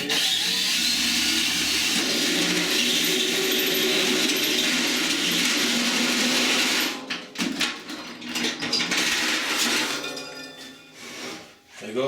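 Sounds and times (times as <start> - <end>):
power tool on metal casing: 0.0 - 6.9
metallic knocks and clatter: 6.9 - 10.8.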